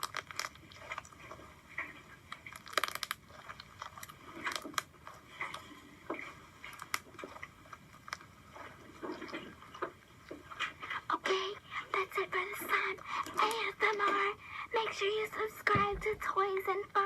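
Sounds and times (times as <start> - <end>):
slime popping and crackling: 0.0 - 1.2, 2.3 - 4.9.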